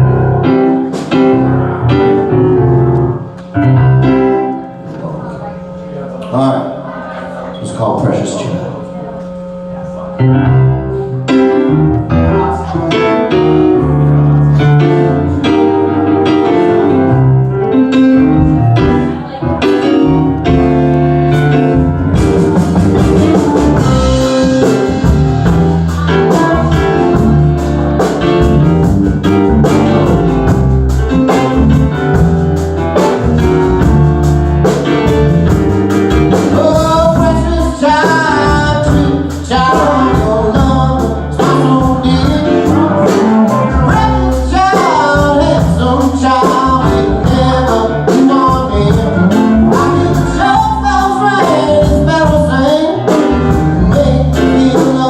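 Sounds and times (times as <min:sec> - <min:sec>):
drums and band playing: 0:00.0 - 0:02.9, 0:18.0 - 0:55.0
keyboard playing: 0:00.0 - 0:55.0
person singing: 0:22.1 - 0:28.8, 0:36.3 - 0:55.0.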